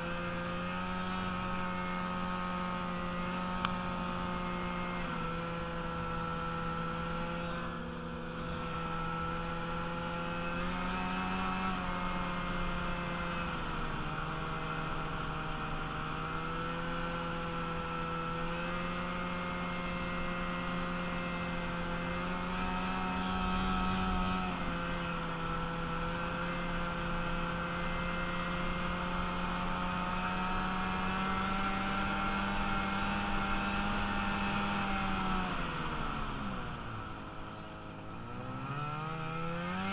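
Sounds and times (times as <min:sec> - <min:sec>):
vehicle engine droning: 0:00.0 - 0:39.9.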